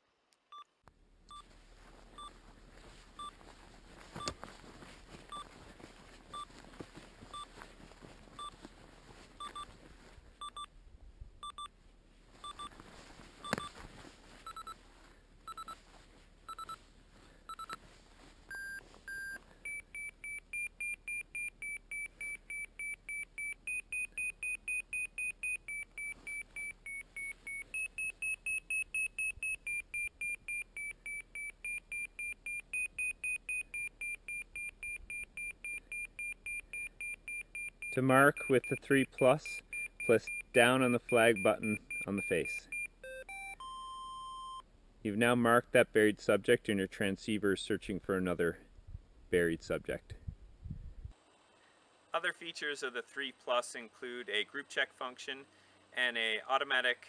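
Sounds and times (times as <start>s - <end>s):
avalanche transceiver beeping: 4.2s - 4.4s, 5.3s - 5.6s, 6.3s - 6.5s, 8.4s - 8.6s, 9.4s - 9.7s, 10.4s - 10.7s, 11.4s - 11.7s, 12.4s - 12.7s, 13.4s - 13.8s, 14.4s - 14.8s, 15.5s - 15.8s, 16.5s - 16.8s, 17.5s - 17.8s, 18.5s - 44.6s.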